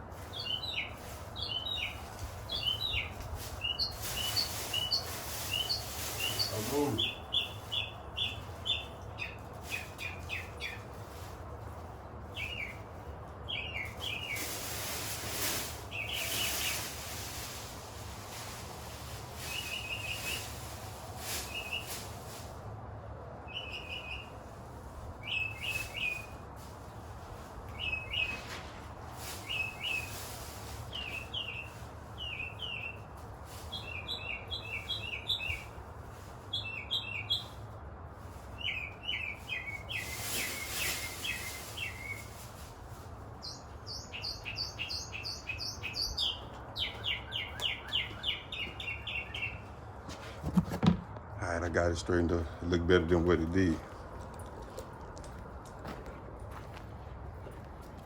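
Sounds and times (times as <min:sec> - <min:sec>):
songbirds chirping: 0:00.1 - 0:50.4
rustling and clattering: 0:50.0 - 0:51.3.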